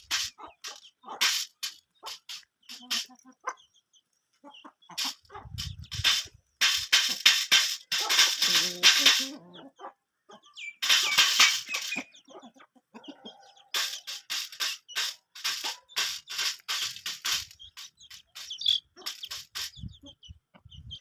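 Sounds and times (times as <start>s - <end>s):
chickens clucking: 0.0s - 21.0s
beaks pecking at food: 13.8s - 19.7s.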